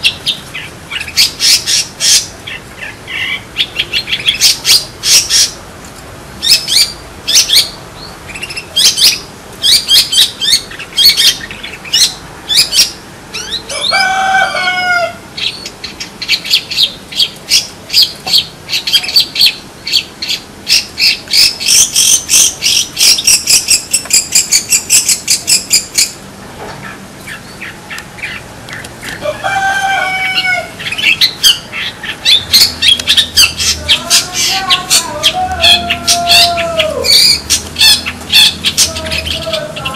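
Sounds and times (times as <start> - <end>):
harsh descending bird calls: 6.4 - 26.2, 26.8 - 39.9
shrike chattering song: 15.4 - 26.2, 26.8 - 39.9.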